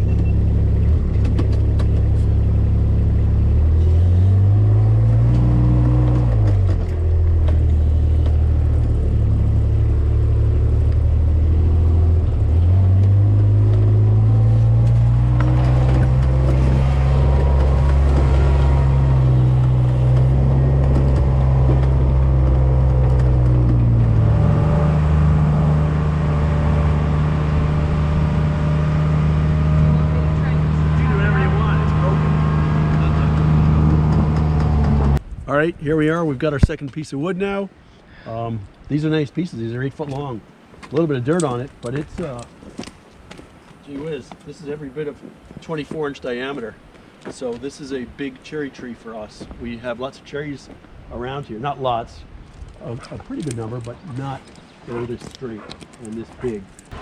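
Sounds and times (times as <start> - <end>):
vehicle engine under load: 0.0 - 35.3, 52.8 - 57.0.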